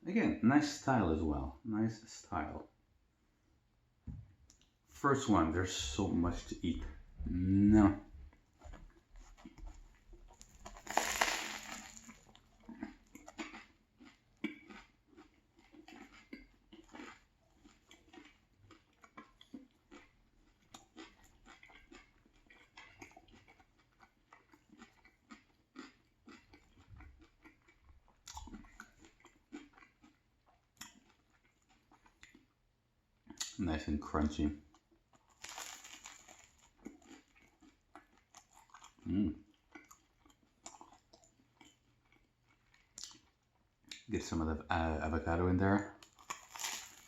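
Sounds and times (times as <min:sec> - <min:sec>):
chewing with crunches: 0:06.9 - 0:33.6, 0:34.2 - 0:44.1, 0:45.8 - 0:47.0
biting into crusty bread: 0:09.3 - 0:32.5, 0:35.1 - 0:44.1, 0:46.0 - 0:47.0.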